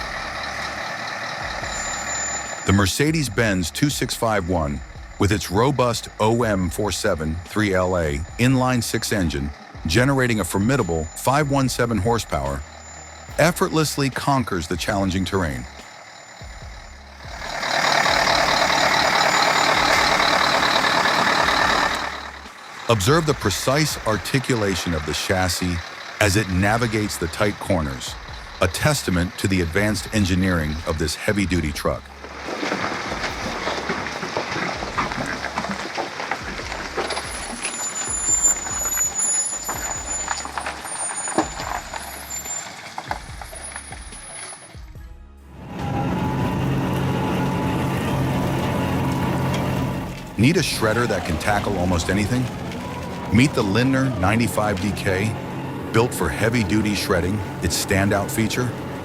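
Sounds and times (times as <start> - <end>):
thin high squeals: 0.0 - 3.6, 10.4 - 14.7, 37.0 - 44.8
heavy truck driving: 0.0 - 59.0
knocks and rattles: 32.1 - 44.9.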